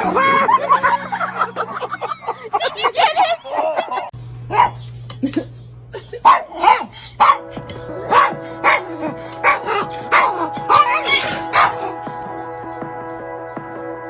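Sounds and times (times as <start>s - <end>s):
background music with held notes: 0.0s - 2.5s, 7.0s - 14.0s
dog barking: 3.8s - 4.9s, 6.2s - 11.9s.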